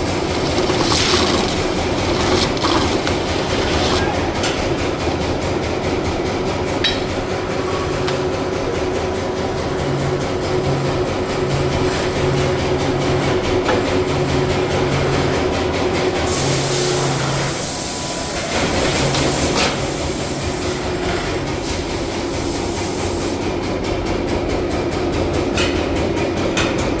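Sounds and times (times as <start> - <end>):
metal lathe humming: 0.0 - 7.0
cutting tool hiss: 16.3 - 20.9.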